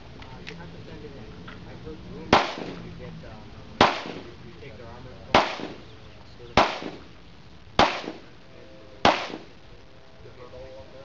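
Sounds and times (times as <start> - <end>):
pistol shots echoing: 2.3 - 2.8, 3.8 - 4.4, 5.4 - 5.9, 6.6 - 7.1, 7.8 - 8.3, 9.0 - 9.6.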